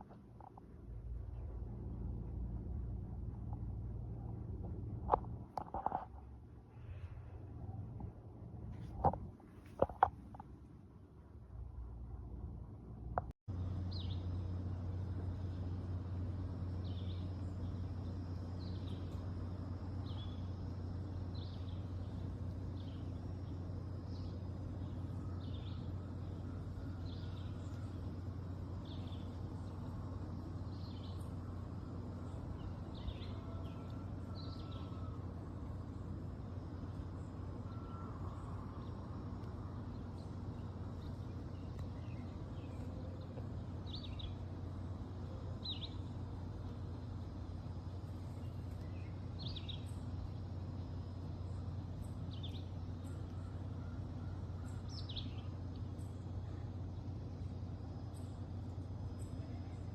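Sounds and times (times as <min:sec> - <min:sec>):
steady low hum: 0:00.0 - 0:59.9
birds chirping: 0:13.6 - 0:59.9.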